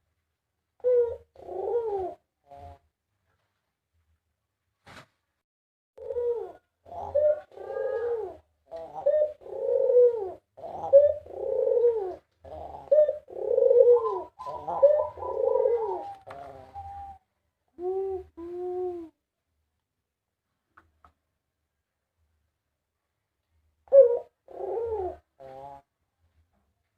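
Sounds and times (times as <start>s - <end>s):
dove cooing: 0.8s - 2.9s, 6.0s - 19.2s, 23.9s - 25.9s.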